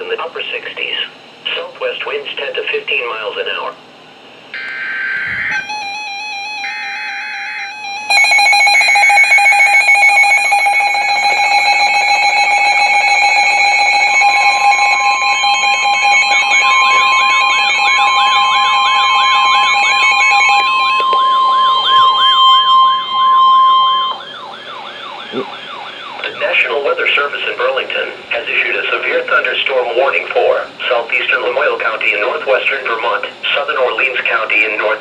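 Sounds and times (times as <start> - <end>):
pure warning alarm tone: 4.5 - 27.3
buzzy attention tone: 4.6 - 25.6
siren sweeps: 4.6 - 26.8
screeching digital data burst: 7.9 - 24.4.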